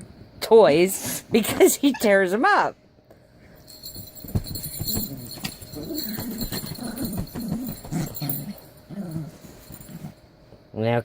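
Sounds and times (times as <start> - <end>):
knocks and scuffles: 3.7 - 8.6
dog growling: 4.9 - 10.2.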